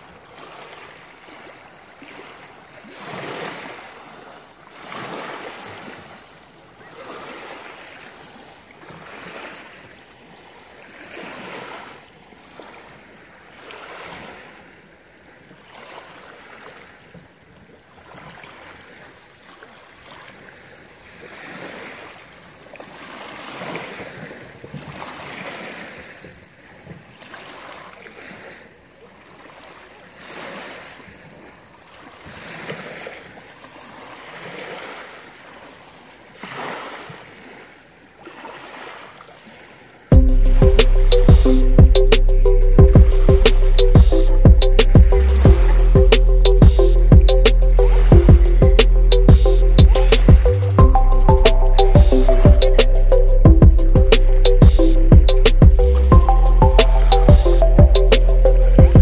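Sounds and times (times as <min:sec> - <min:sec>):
small sea waves washing ashore: 0:00.0 - 0:40.1.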